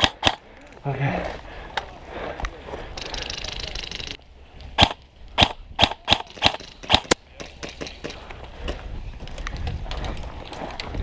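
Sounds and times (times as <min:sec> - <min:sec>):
airsoft gun shots: 0:04.8 - 0:07.8.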